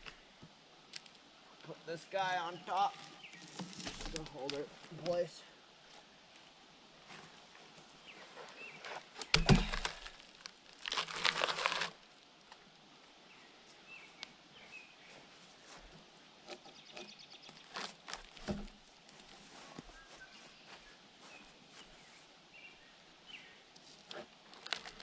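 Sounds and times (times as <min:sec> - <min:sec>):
wood scraping and rustling: 0:02.7 - 0:05.1, 0:08.1 - 0:12.0, 0:15.7 - 0:20.0, 0:23.8 - 0:25.0
log thumping onto log: 0:03.4 - 0:04.6, 0:09.2 - 0:10.3, 0:18.2 - 0:18.8.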